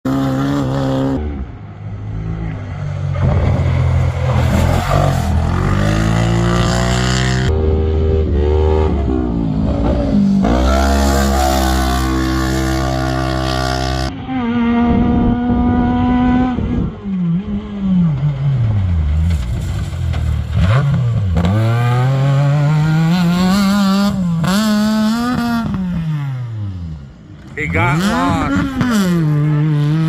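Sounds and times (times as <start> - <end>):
racing engine revving: 27.4 - 30.0.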